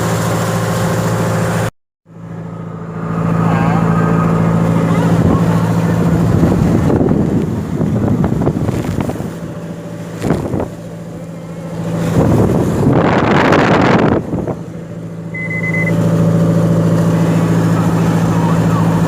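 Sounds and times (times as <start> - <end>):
boat engine running: 0.0 - 19.0
rush of wind and sea: 3.8 - 19.0
high beep: 15.3 - 16.0.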